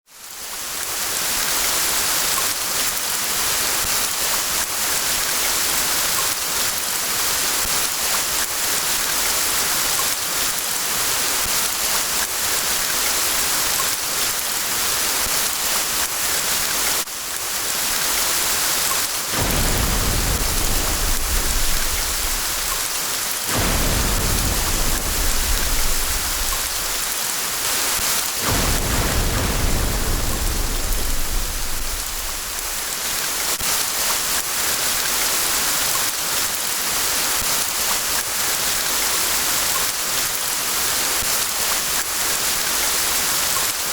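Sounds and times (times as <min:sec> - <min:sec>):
heavy rain falling: 0:00.2 - 0:43.9
low rolls of thunder: 0:19.3 - 0:27.2, 0:28.4 - 0:32.9.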